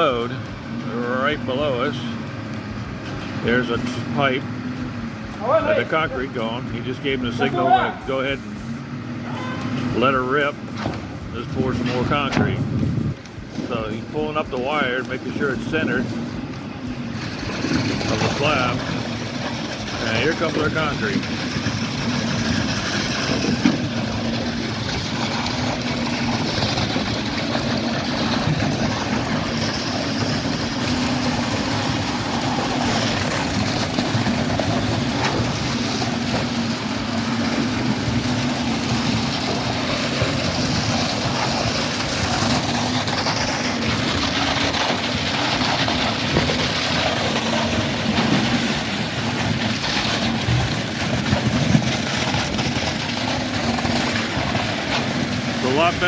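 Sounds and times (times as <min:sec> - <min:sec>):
diesel engine under load: 0:00.0 - 0:56.0.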